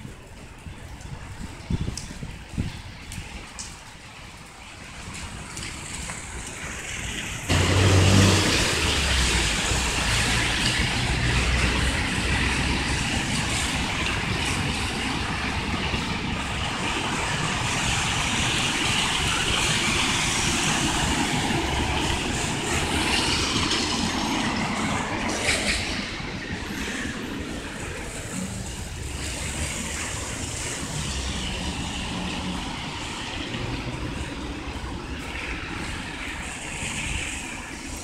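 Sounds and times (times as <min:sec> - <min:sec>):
motor vehicle engine drone: 0:07.5 - 0:14.0.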